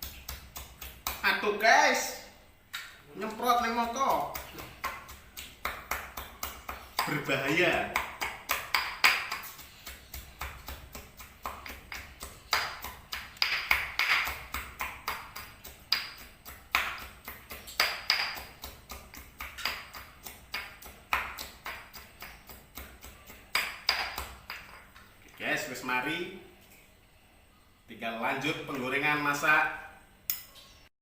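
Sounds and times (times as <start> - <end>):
pestle pounding in mortar: 0.0 - 1.3, 3.6 - 24.9.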